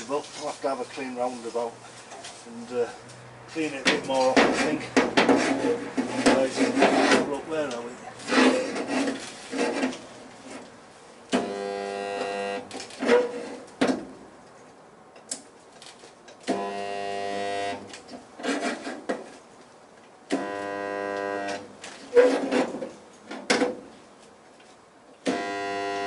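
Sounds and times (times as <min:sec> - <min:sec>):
spot welder buzzing: 0:11.4 - 0:12.8, 0:16.5 - 0:18.0, 0:20.3 - 0:21.7, 0:25.2 - 0:26.0.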